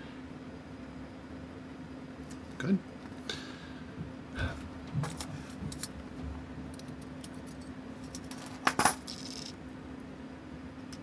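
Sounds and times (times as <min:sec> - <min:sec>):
small metal tools clinking: 0:06.8 - 0:09.6.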